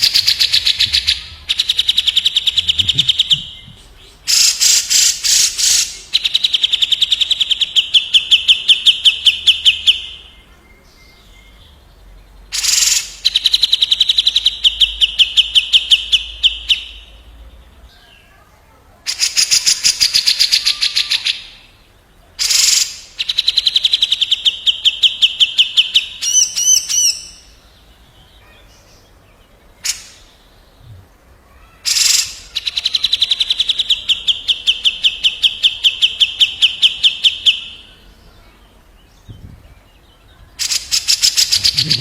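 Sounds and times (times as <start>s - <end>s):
higher wavering bird phrase: 41.4s - 42.0s.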